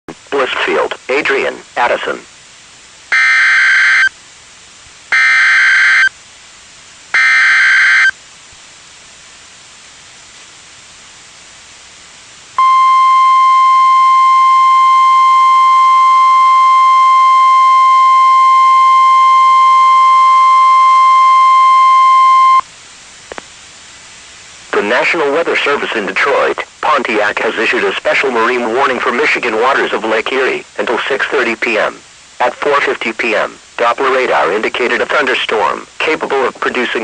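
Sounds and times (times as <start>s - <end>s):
buzzy digital data tones: 3.1s - 4.1s, 5.1s - 6.1s, 7.2s - 8.1s
steady high alarm tone: 3.1s - 4.1s, 5.1s - 6.1s, 7.2s - 8.1s, 12.6s - 22.6s.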